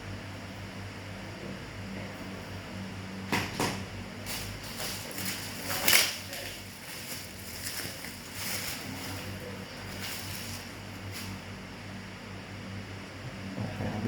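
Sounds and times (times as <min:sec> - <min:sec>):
low electrical hum: 0:00.0 - 0:14.0
handling rustles and knocks: 0:04.3 - 0:11.4.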